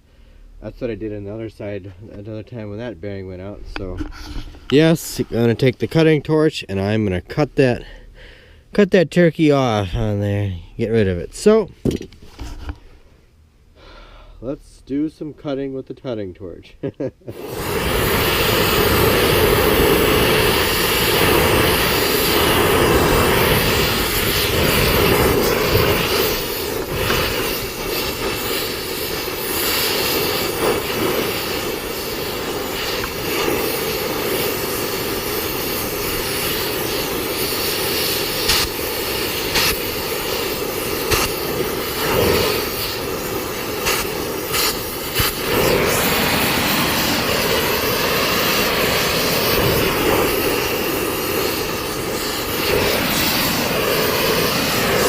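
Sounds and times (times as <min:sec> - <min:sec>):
cutting torch roaring hiss: 0:17.2 - 0:55.0.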